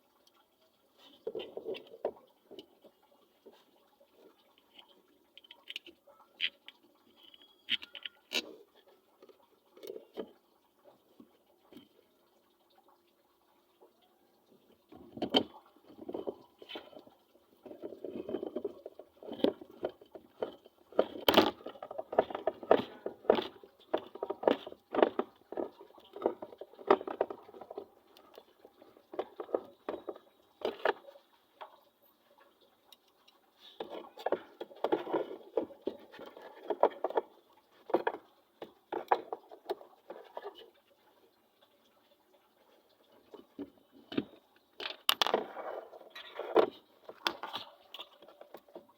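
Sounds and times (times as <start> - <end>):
hard parts clicking and rattling: 15.0 - 31.1, 43.3 - 48.9.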